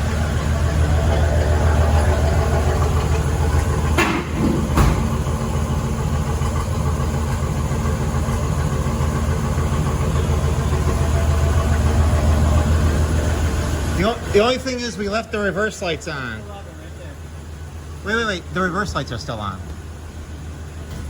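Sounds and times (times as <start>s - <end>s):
car engine idling: 0.0s - 21.0s
sharp clunks: 3.6s - 5.3s.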